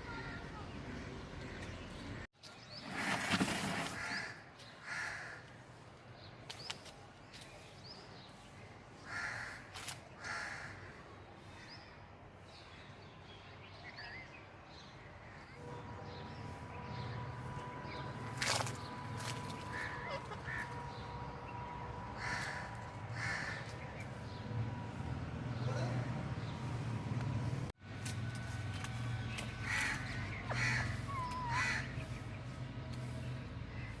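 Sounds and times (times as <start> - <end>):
harsh bird calls: 29.3 - 34.0.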